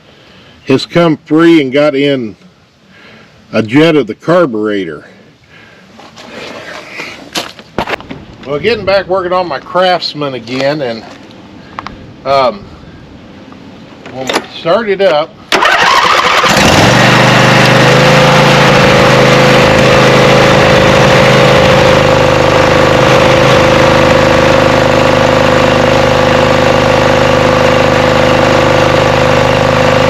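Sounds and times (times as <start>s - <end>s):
misfiring lawn tractor engine: 15.5s - 30.0s.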